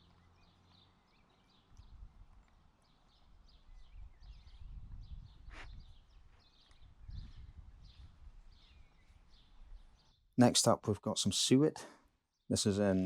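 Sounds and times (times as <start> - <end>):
small birds chirping: 0.0 - 10.6.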